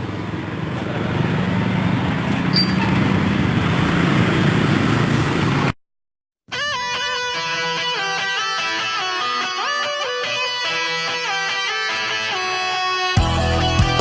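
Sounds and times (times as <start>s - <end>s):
roadside traffic noise: 0.0s - 5.8s, 6.5s - 13.0s
strummed guitar music: 6.5s - 14.0s.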